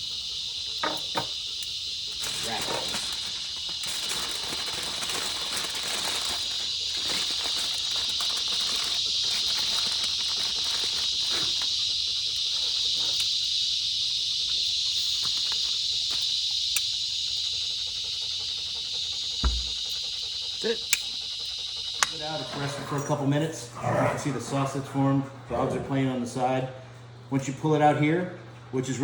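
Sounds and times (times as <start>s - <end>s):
insects droning: 0.0s - 29.0s
aluminium foil crinkling: 0.8s - 16.3s.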